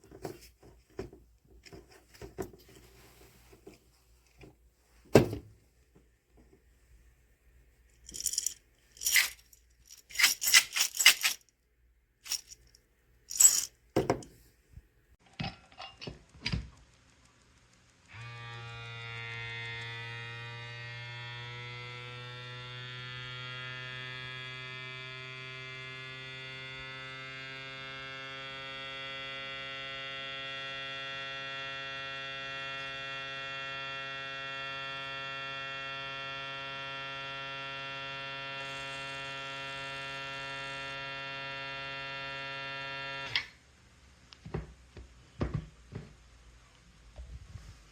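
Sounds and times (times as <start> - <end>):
handling clicks and knocks: 8.1 - 11.4, 13.3 - 14.4.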